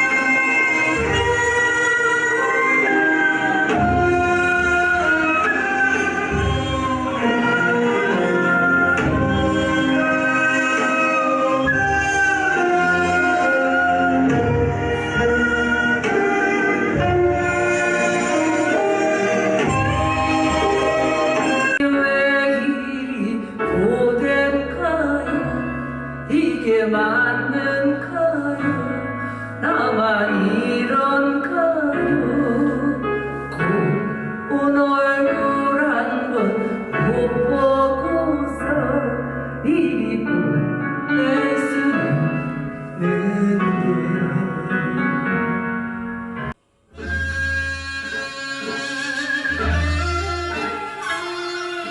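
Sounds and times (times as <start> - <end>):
instrumental accompaniment: 0.0 - 51.9
person singing: 29.6 - 45.1.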